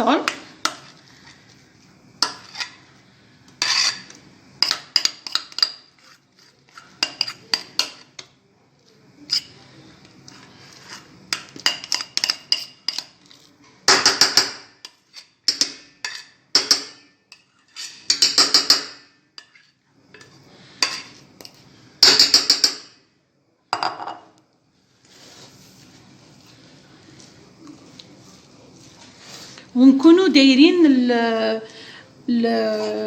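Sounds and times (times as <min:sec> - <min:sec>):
utensil clinking against bowl: 0:06.7 - 0:08.3.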